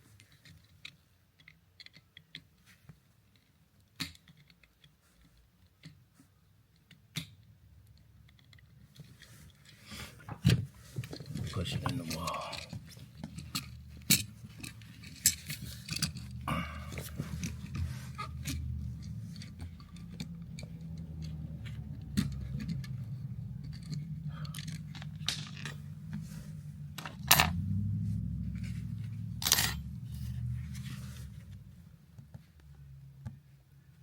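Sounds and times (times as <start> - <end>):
low rumble: 22.9 - 31.9.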